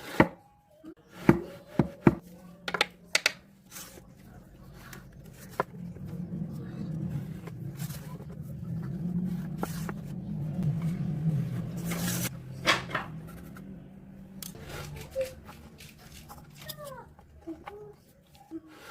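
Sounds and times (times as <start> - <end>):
low motor hum: 4.0 - 16.4.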